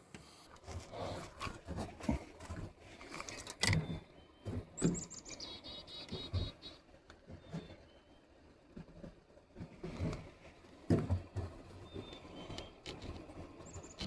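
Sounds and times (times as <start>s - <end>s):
knocks and light clatter: 8.8s - 14.0s.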